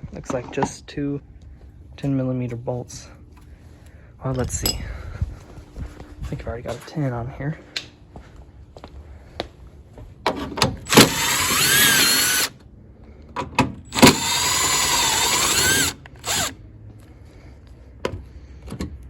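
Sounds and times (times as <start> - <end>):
cordless power tool motor whine: 10.8 - 12.6, 13.9 - 16.6.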